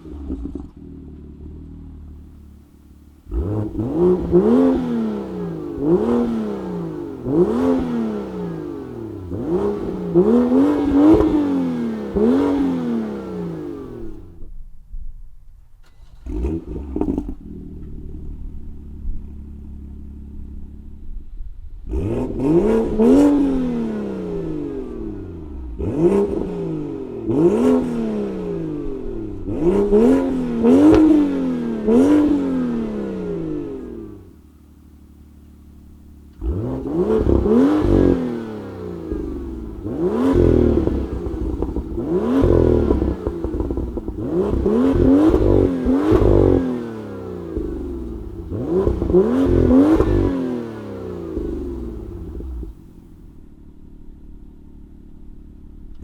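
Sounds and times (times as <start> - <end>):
car engine idling and revving: 0.0 - 56.0.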